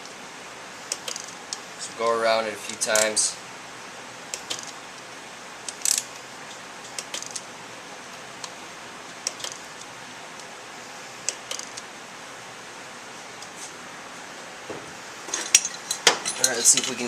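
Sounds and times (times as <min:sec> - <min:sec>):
steady low hiss: 0:00.0 - 0:17.0
torque wrench clicking: 0:00.9 - 0:01.6, 0:04.3 - 0:04.8, 0:05.7 - 0:06.2, 0:06.9 - 0:07.4, 0:09.2 - 0:09.9, 0:11.3 - 0:11.8.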